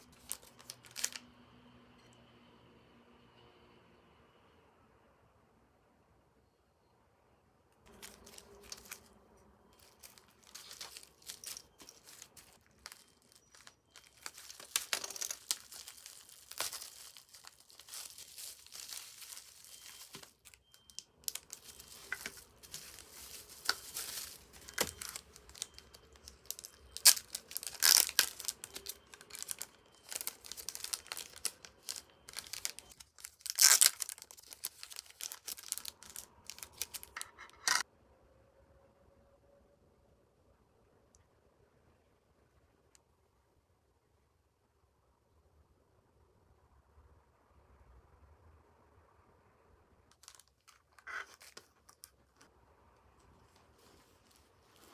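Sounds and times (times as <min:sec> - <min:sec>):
packaging crinkling: 0:00.0 - 0:01.2, 0:07.9 - 0:37.8, 0:50.1 - 0:52.5, 0:53.2 - 0:54.9
packaging ripping: 0:00.0 - 0:01.2, 0:07.9 - 0:09.1, 0:09.8 - 0:37.8, 0:50.1 - 0:52.1.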